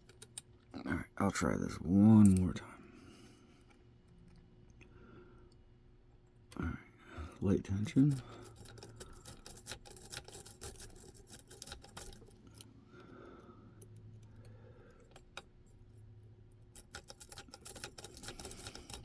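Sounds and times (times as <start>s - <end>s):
lock pick clicking and scraping: 7.9s - 12.8s, 13.8s - 15.9s, 16.6s - 19.0s.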